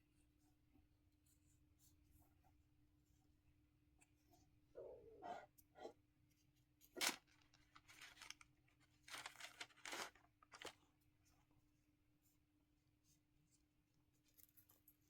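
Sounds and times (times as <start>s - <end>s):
paper crinkling and scraping: 6.8s - 10.9s.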